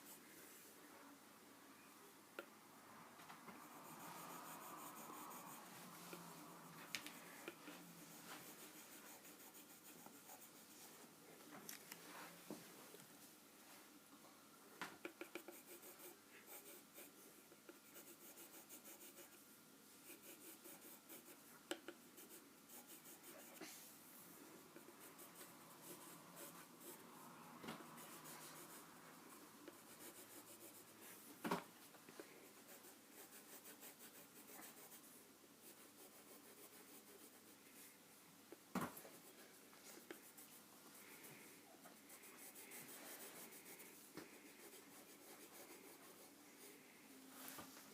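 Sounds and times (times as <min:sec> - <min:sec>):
drawing tool scratching paper: 0:08.2 - 0:10.8, 0:22.2 - 0:23.6, 0:24.8 - 0:27.2, 0:27.8 - 0:29.0, 0:29.7 - 0:31.1, 0:32.6 - 0:37.6, 0:42.0 - 0:46.7.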